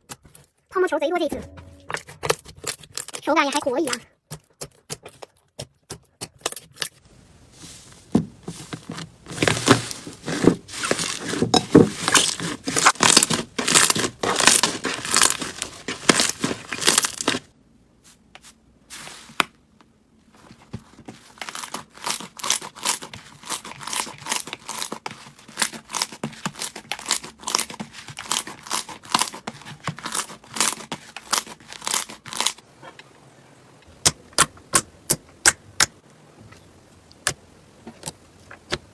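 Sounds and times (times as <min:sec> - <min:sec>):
crunchy slime crackling and popping: 0:08.1 - 0:17.5, 0:21.4 - 0:32.6.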